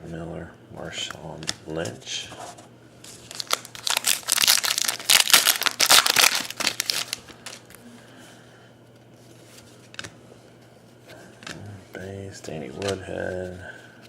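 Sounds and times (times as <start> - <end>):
foil wrapper crackling: 3.0 - 7.8.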